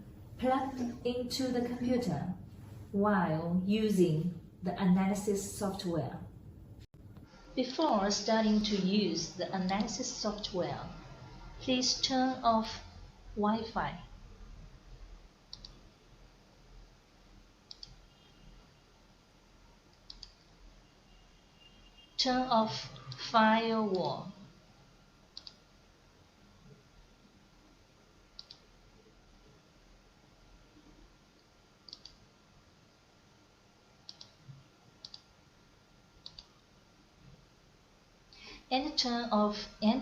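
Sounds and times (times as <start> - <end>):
faint room hiss: 0.0 - 40.0
computer mouse double clicks: 28.4 - 28.6, 36.2 - 36.5.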